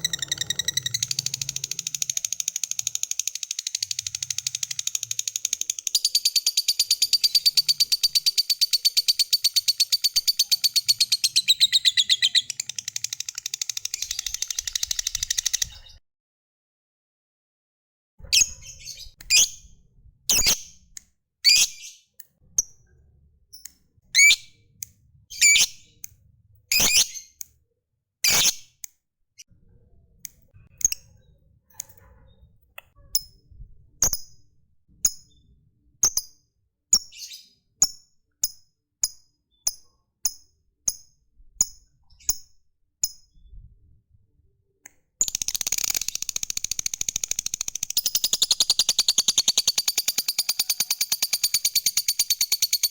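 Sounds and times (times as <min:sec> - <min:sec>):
bird chattering trill: 0:00.0 - 0:15.8, 0:45.2 - 0:52.9
bird chirping: 0:00.0 - 0:16.0, 0:36.9 - 0:37.8, 0:45.2 - 0:52.9.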